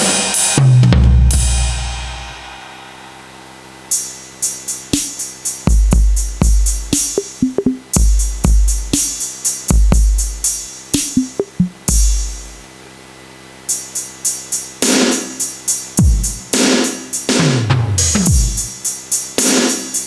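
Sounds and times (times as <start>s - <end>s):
hi-hat-like ticks: 3.9s - 12.6s, 13.7s - 14.7s
electronic kick drum and snare hits: 4.6s - 12.7s, 14.8s - 20.0s
electronic tom hits falling pitch: 11.0s - 12.6s.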